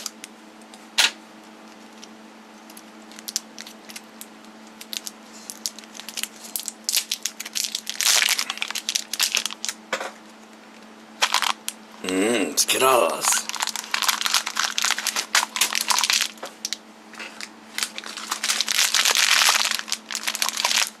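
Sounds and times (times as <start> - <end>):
low electrical hum: 0.0 - 21.0
wrapper crinkling and tearing: 1.9 - 9.8, 11.2 - 11.8, 13.3 - 21.0.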